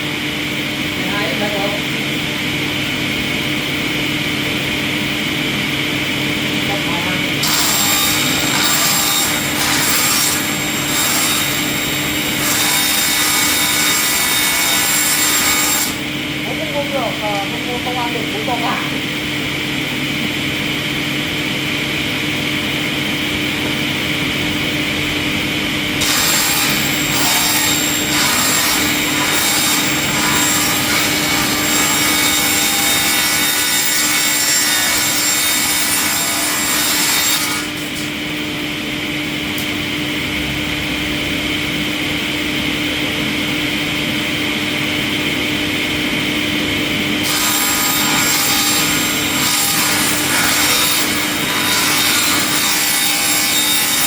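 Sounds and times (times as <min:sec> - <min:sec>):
machine running: 0:19.1 - 0:54.0.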